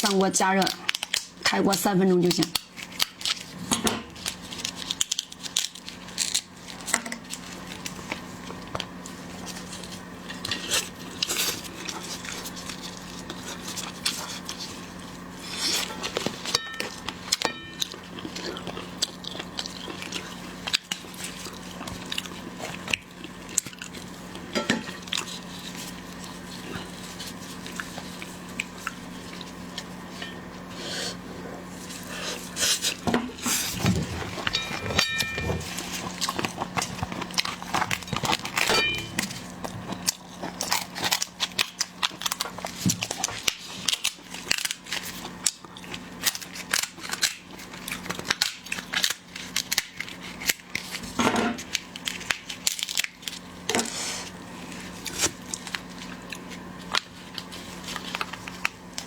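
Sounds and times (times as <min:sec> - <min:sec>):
steady low hum: 0:09.1 - 0:42.4.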